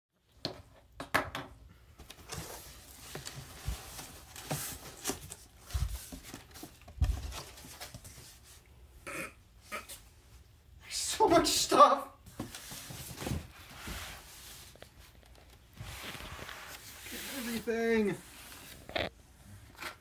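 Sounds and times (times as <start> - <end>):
cardboard rustling and crinkling: 1.9 - 8.6, 12.2 - 20.0.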